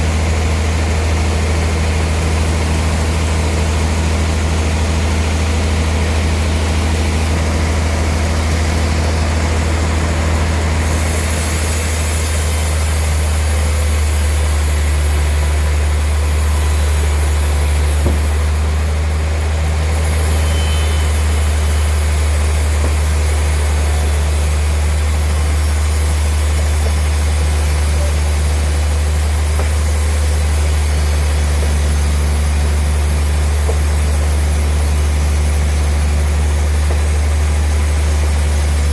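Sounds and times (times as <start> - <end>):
sawmill machinery droning: 0.0 - 38.9
sharp knock: 18.0 - 18.6.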